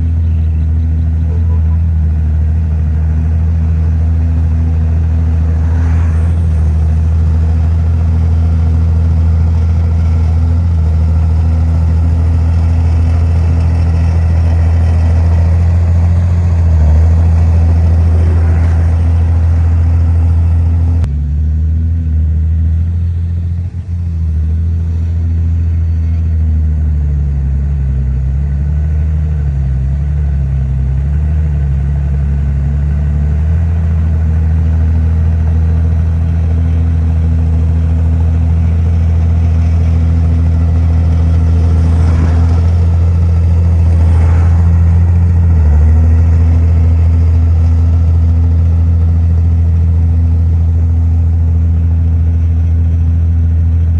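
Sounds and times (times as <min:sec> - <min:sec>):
heavy diesel engine running: 0:00.0 - 0:53.9.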